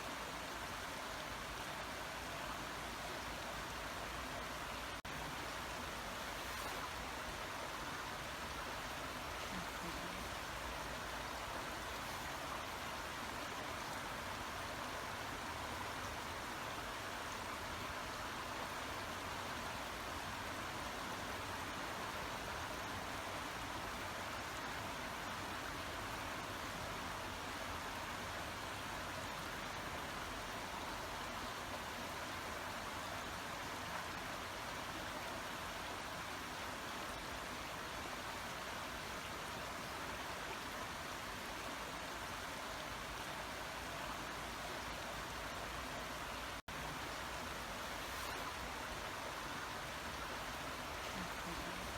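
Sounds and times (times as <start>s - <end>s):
water running over stones: 1.2s - 24.2s, 38.6s - 51.9s.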